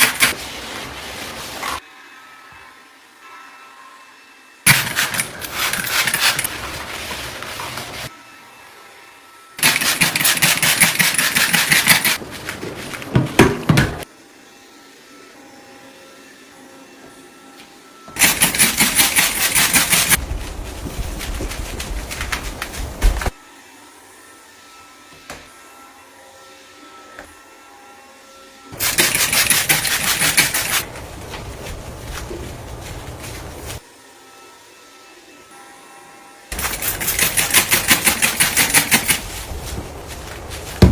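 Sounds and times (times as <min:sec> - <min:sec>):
scrubbing strokes: 0:00.0 - 0:01.8, 0:04.7 - 0:08.1, 0:28.8 - 0:33.8.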